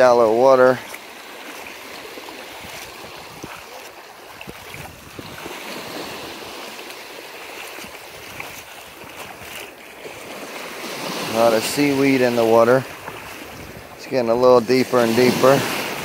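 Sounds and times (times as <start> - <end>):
shallow sea water splashing: 0.0 - 16.0.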